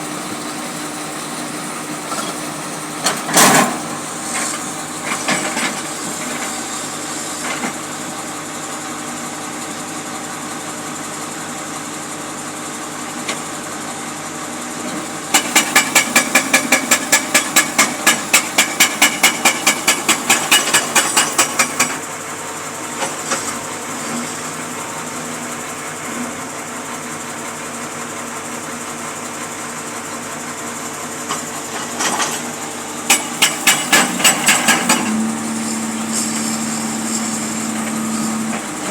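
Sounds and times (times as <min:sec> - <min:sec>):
jackhammer pounding: 0:00.0 - 0:06.7, 0:15.0 - 0:26.2, 0:31.1 - 0:38.9
machine engine running: 0:12.7 - 0:38.9.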